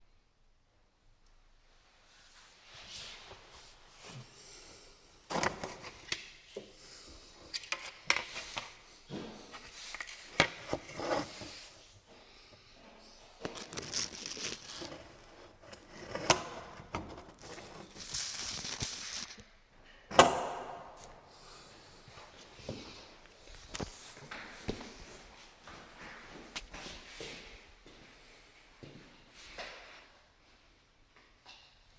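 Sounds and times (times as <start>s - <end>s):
scraping and rustling: 7.6s - 12.0s, 13.4s - 19.4s.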